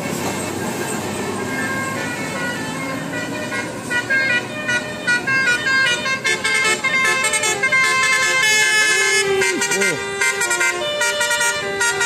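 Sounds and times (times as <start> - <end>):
bus multi-tone horn tune: 0.0 - 12.0.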